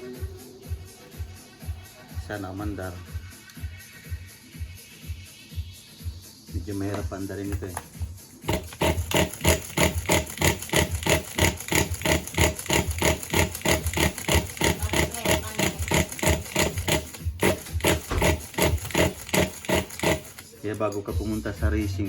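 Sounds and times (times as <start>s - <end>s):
engine pull-starter yanked: 8.5s - 21.0s.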